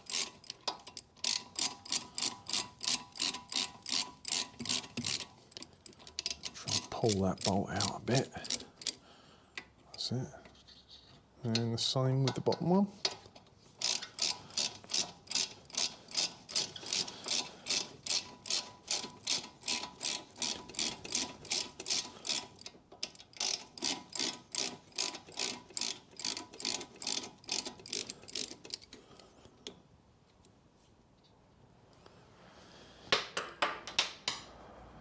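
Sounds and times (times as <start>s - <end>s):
ratchet clicking: 0.0s - 9.0s, 13.8s - 29.0s.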